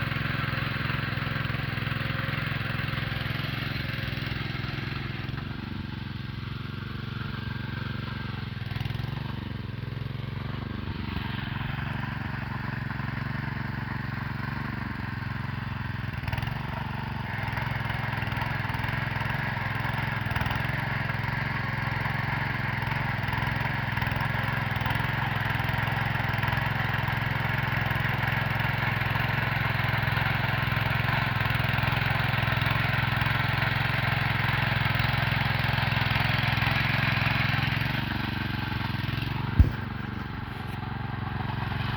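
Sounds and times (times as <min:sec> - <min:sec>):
rotavator tilling soil: 0:00.0 - 0:41.9
tractor engine running: 0:00.0 - 0:41.9.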